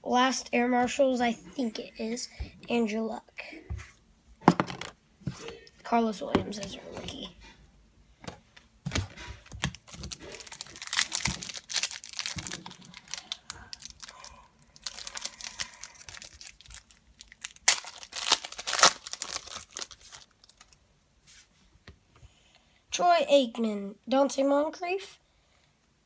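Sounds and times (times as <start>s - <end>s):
foil wrapper tearing and crinkling: 8.9s - 20.8s.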